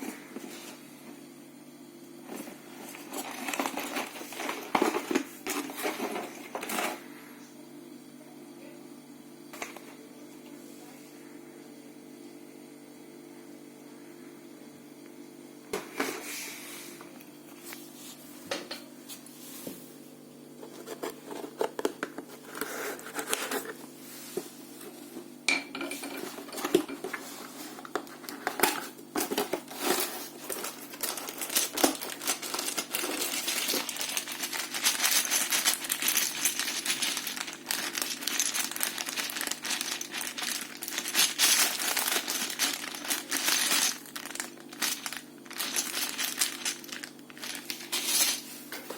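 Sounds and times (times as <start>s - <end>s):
plastic pieces clattering: 2.8s - 7.0s, 27.8s - 48.9s
packaging crinkling: 2.9s - 6.9s, 27.8s - 48.5s.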